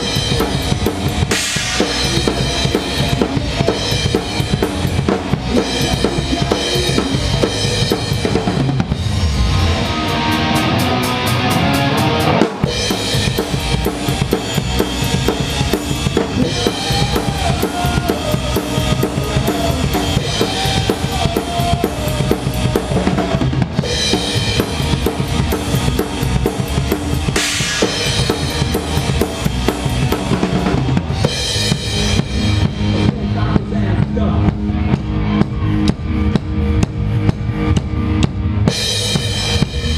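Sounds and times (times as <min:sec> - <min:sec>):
rimshots and cymbals: 0:00.0 - 0:06.2, 0:23.8 - 0:33.0
rock band playing live: 0:00.0 - 0:39.9.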